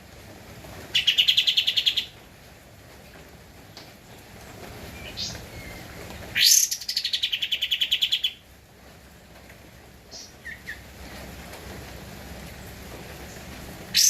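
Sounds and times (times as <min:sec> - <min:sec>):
songbird singing: 0:00.9 - 0:02.2, 0:03.6 - 0:08.5, 0:10.0 - 0:11.0.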